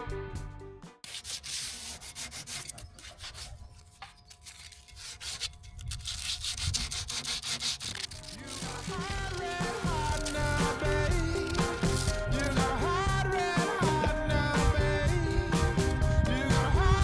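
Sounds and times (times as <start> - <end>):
background music: 0.0 - 1.0, 8.2 - 17.0
sanding wood by hand: 1.0 - 14.8.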